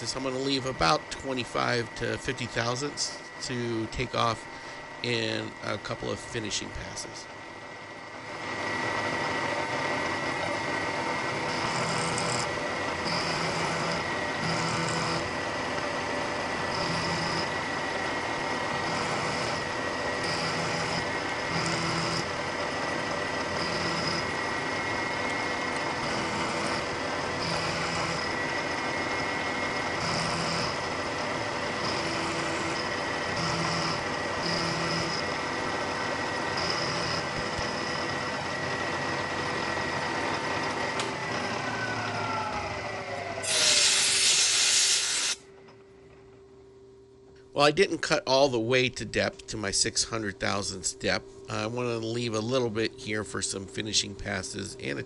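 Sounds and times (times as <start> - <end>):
milling machine hum: 0.0 - 55.0
end mill cutting aluminium: 8.2 - 45.4.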